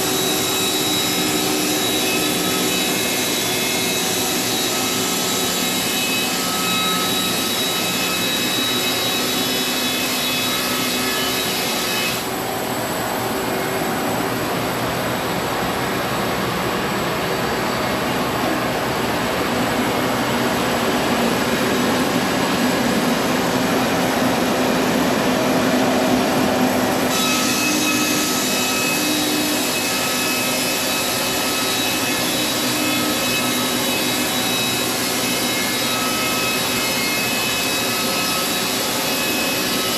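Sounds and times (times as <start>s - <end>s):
sawmill running: 0.0s - 39.9s
sawmill blade cutting wood: 23.8s - 39.9s.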